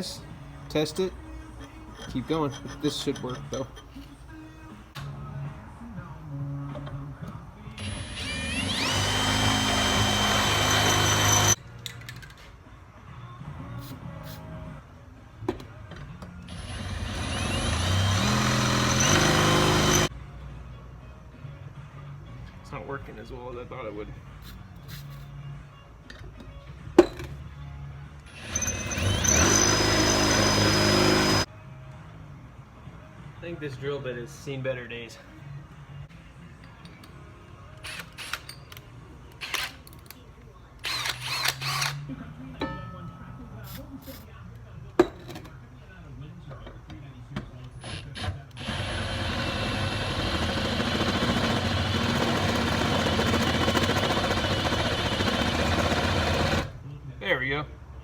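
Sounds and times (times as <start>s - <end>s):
power drill whine: 7.8s - 11.6s, 16.5s - 20.1s, 28.3s - 31.5s, 47.8s - 56.7s.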